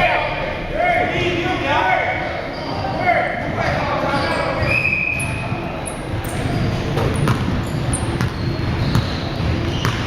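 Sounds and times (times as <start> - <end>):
basketball bouncing on wooden floor: 4.6 - 10.0.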